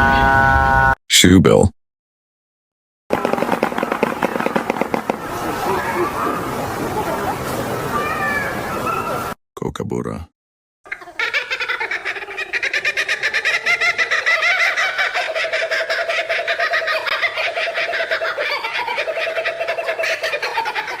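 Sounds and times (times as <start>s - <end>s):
kookaburra laughing call: 10.9s - 21.0s.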